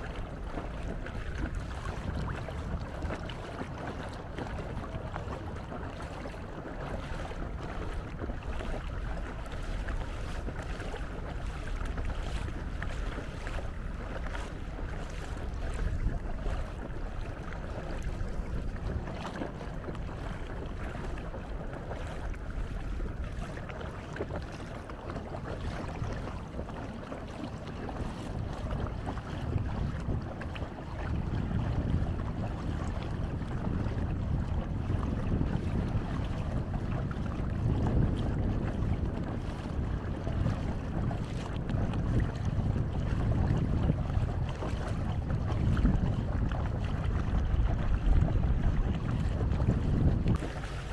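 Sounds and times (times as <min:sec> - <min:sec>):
water washing along canoe hull: 0:00.0 - 0:50.9
wind buffeting microphone: 0:00.0 - 0:50.9.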